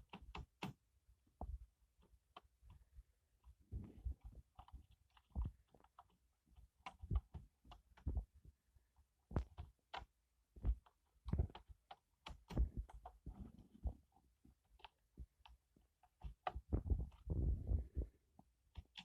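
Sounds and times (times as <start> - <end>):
typing on keyboard: 0.0 - 0.8, 18.7 - 19.0.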